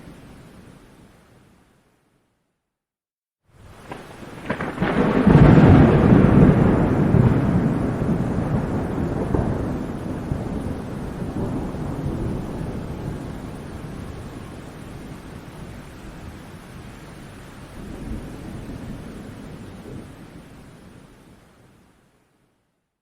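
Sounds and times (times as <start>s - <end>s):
rain: 0.0s - 2.5s, 3.5s - 23.0s
thunder rolling: 3.6s - 16.2s.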